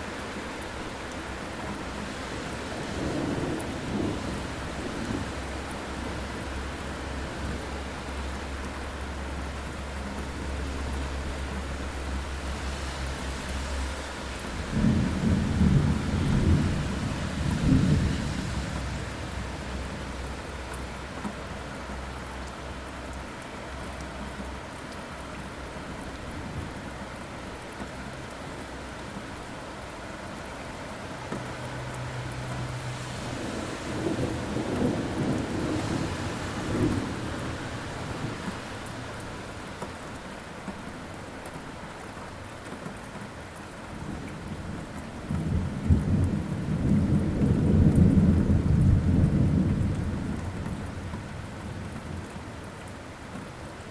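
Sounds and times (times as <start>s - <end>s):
steady rainfall: 0.0s - 53.9s
rolling thunder: 14.6s - 19.6s, 33.4s - 38.7s, 45.4s - 51.2s.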